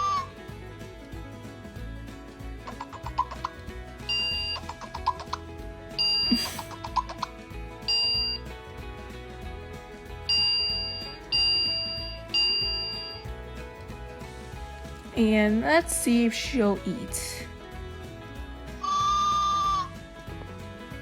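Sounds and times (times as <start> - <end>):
light background music: 0.0 - 21.0
two-tone electronic beep: 4.1 - 4.9, 6.0 - 7.2, 7.9 - 8.5, 10.3 - 13.3.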